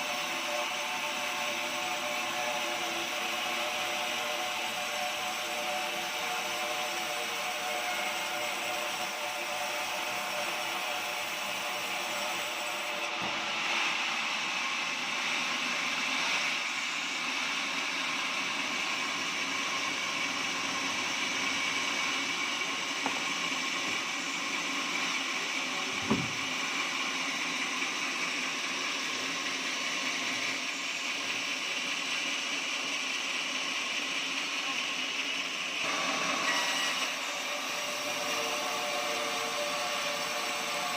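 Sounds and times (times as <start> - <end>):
sawmill running: 0.0 - 40.9
sharp knock: 26.0 - 26.4.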